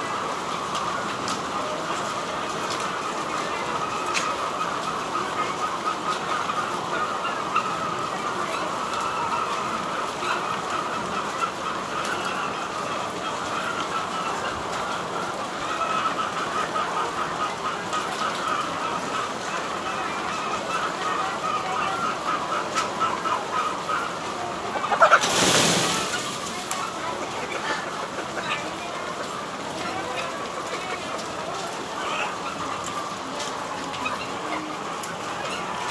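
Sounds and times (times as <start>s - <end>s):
chickens cheeping and clucking: 0.0s - 35.9s.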